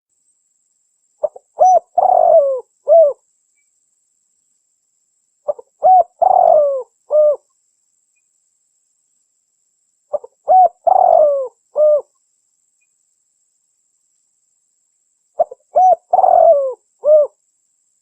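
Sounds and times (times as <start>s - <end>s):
dove cooing: 1.2s - 3.2s, 5.5s - 7.4s, 10.1s - 12.1s, 15.4s - 17.4s.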